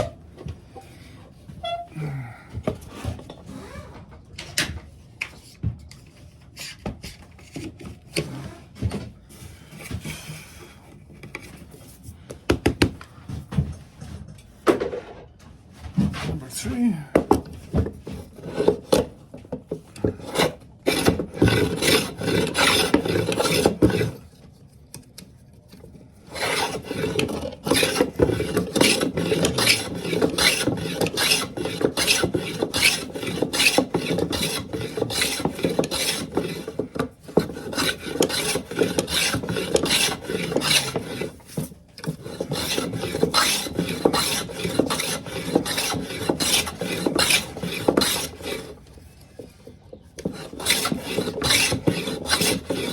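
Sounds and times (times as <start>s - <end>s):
hand sanding wood: 20.1s - 24.2s, 26.3s - 48.8s, 50.2s - 52.9s.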